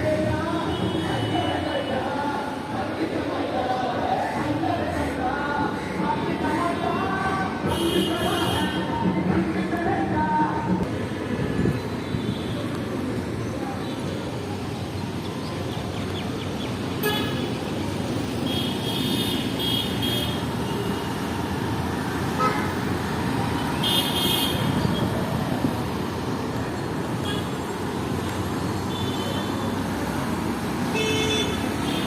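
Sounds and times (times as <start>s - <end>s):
street traffic: 0.0s - 32.0s
vehicle horns tooting: 7.6s - 8.9s, 17.0s - 17.6s, 18.4s - 21.2s, 22.3s - 22.9s, 23.6s - 25.2s, 27.2s - 27.6s, 28.9s - 29.8s, 30.9s - 32.0s.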